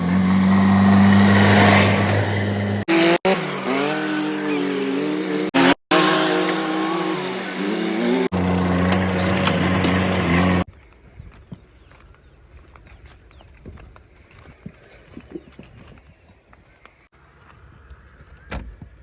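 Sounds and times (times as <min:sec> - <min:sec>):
heavy machinery diesel engine: 0:00.0 - 0:03.0, 0:04.5 - 0:10.7.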